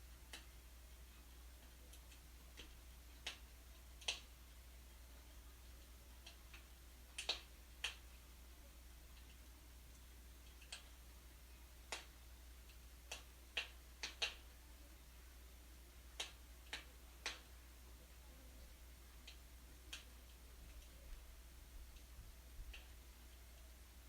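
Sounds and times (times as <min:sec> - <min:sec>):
faint low hum: 0:00.0 - 0:24.0
wood fire crackling and popping: 0:01.6 - 0:04.3, 0:05.8 - 0:08.1, 0:11.9 - 0:14.5, 0:19.2 - 0:23.0.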